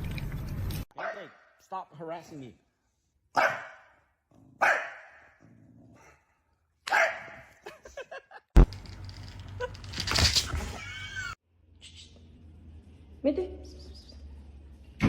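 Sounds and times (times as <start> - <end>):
dog barking: 3.4 - 5.4, 6.9 - 7.6
rustling and handling noise: 8.6 - 11.1.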